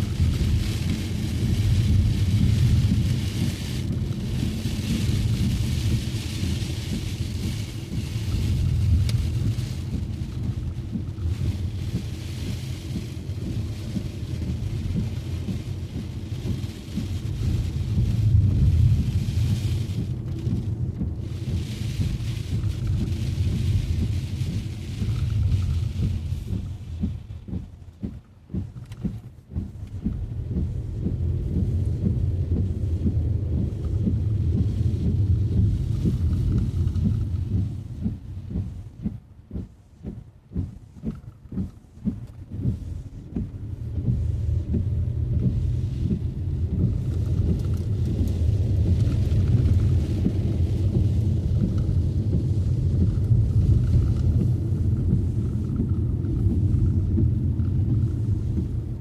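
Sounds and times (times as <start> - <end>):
car rumbling on wet streets: 0.0 - 59.0
short uneven thumps: 19.8 - 59.0.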